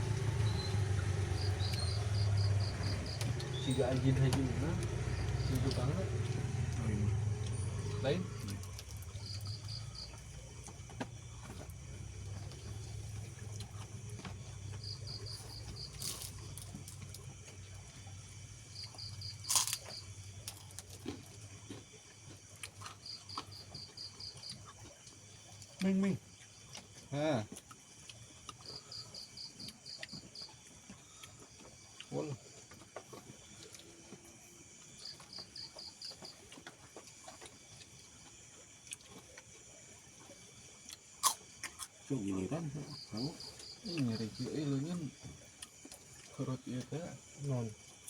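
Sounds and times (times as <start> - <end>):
cricket chirping: 0.0 - 48.0
chewing clicks: 0.3 - 3.7, 4.3 - 17.8, 18.8 - 26.0, 26.7 - 32.1, 34.8 - 39.5
crunch of biting food: 15.3 - 17.3, 19.0 - 25.8, 40.8 - 42.0.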